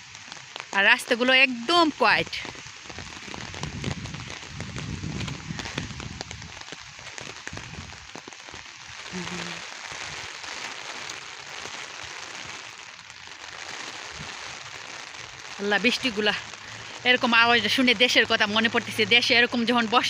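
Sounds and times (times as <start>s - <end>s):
heavy rain: 0.0s - 20.0s
low rumble: 2.9s - 6.6s.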